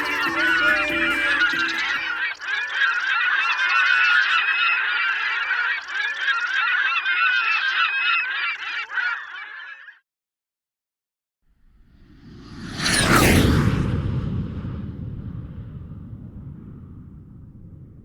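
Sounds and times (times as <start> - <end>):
geese honking: 0.0 - 9.8.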